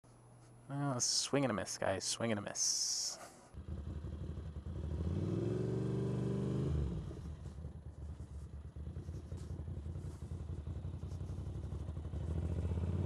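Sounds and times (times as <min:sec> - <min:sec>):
motorcycle engine revving: 0:03.6 - 0:13.0.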